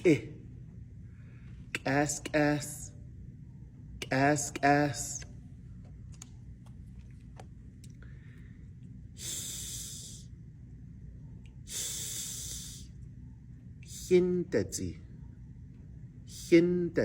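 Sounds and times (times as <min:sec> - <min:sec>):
person saying hissing consonant: 0:09.2 - 0:10.3, 0:11.7 - 0:13.0, 0:13.8 - 0:14.8.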